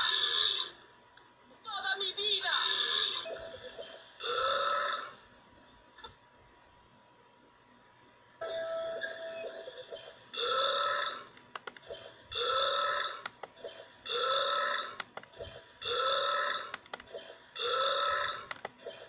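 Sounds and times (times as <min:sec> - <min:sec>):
person burping: 0:04.2 - 0:05.2, 0:10.4 - 0:11.3, 0:12.3 - 0:13.3, 0:14.1 - 0:15.0, 0:15.8 - 0:16.7, 0:17.6 - 0:18.5.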